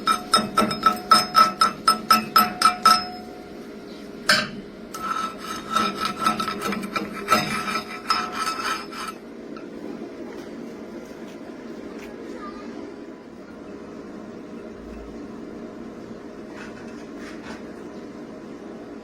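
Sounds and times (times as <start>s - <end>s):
hand tool scraping metal: 0.0s - 3.2s, 4.3s - 9.2s.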